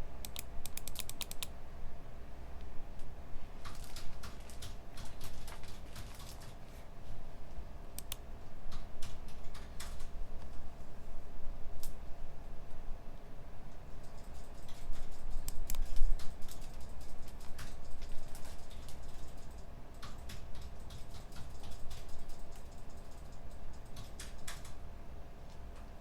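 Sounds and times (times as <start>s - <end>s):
low ventilation hum: 0.0s - 26.0s
computer keyboard typing: 0.2s - 1.5s, 3.6s - 6.6s, 8.0s - 10.1s, 13.9s - 24.8s.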